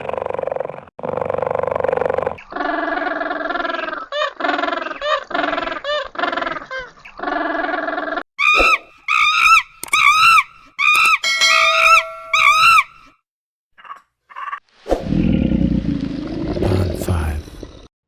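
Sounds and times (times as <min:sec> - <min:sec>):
short high animal calls: 0:08.4 - 0:13.1.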